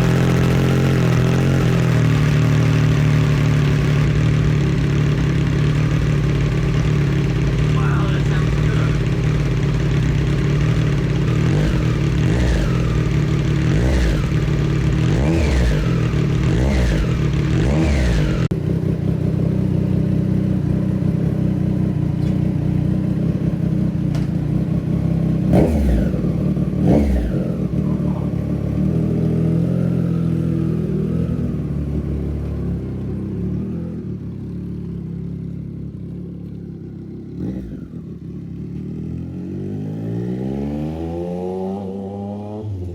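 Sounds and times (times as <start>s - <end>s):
exhaust cracks: 0.0s - 18.6s
motorcycle engine revving: 0.0s - 42.9s.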